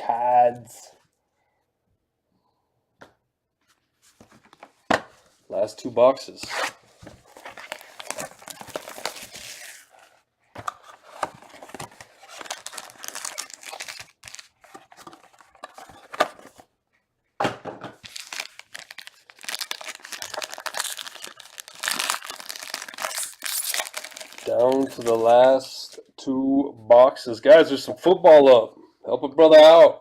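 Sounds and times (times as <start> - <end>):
plastic crinkling: 7.0 - 16.6, 18.0 - 25.3
plastic shrink wrap tearing: 7.3 - 10.0, 11.4 - 16.1, 18.0 - 25.3.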